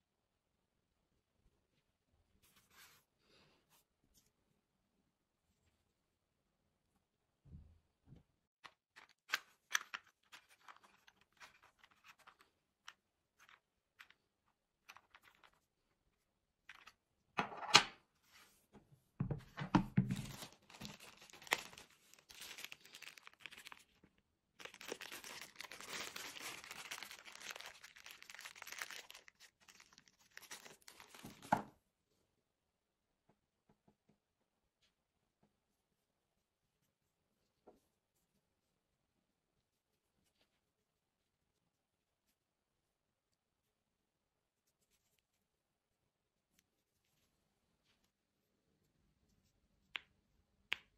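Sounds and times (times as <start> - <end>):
material crinkling: 8.6 - 17.0, 20.0 - 31.8.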